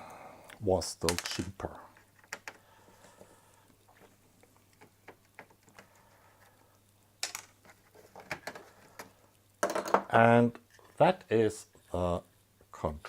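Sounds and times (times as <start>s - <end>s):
plastic parts clicking: 1.0s - 2.6s.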